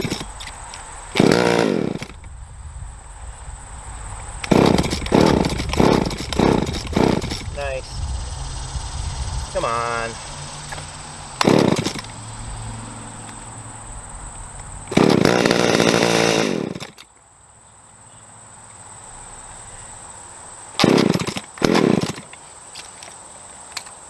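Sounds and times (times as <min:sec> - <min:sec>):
chainsaw engine sputtering: 0:00.0 - 0:02.3, 0:04.3 - 0:08.1, 0:09.5 - 0:13.5, 0:14.6 - 0:17.1, 0:20.8 - 0:24.0.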